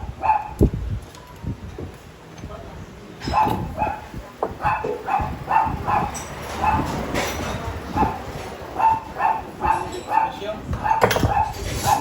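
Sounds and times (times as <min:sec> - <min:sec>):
dog barking: 0:00.0 - 0:00.6, 0:03.3 - 0:07.0, 0:08.0 - 0:12.0.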